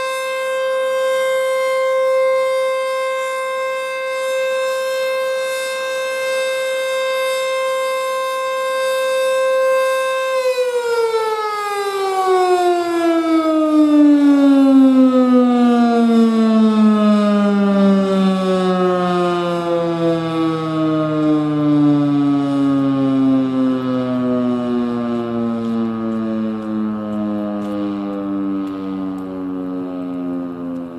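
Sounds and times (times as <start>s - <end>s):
warning siren alert tone: 0.0s - 30.9s.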